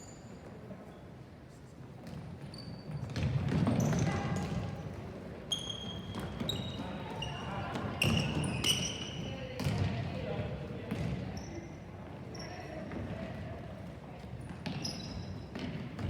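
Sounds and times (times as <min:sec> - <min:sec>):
sneakers squeaking on court: 0:02.1 - 0:09.9, 0:14.6 - 0:16.0.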